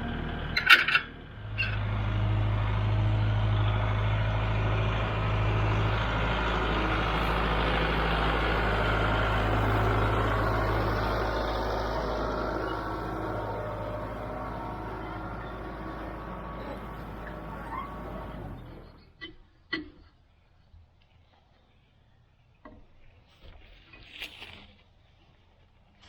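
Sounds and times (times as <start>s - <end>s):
engine running steadily: 0.0s - 19.2s.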